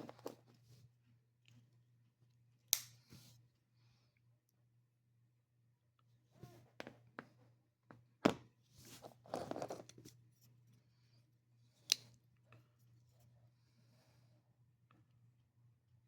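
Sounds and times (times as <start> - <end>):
pocket knife clicks: 2.7 - 3.0
pocket knife sharp snap: 2.7 - 3.0
rustling and scraping: 8.8 - 10.6.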